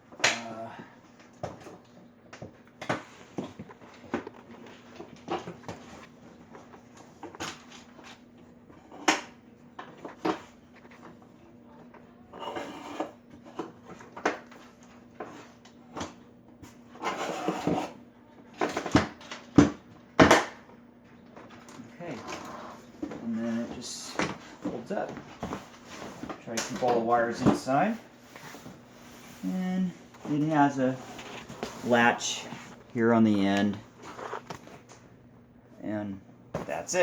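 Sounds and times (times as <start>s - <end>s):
faint steady hum: 0.0s - 37.0s
rubbing scrapes: 12.4s - 13.2s.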